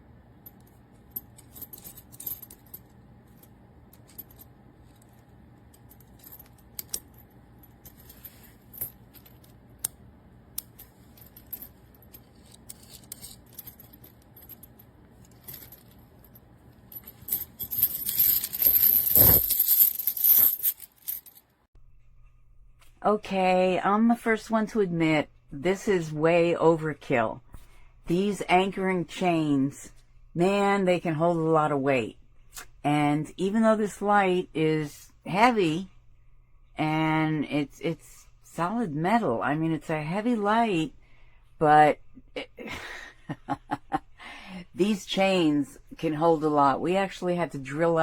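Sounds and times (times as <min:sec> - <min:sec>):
metal chain links clinking: 0:00.5 - 0:09.6, 0:10.6 - 0:21.5.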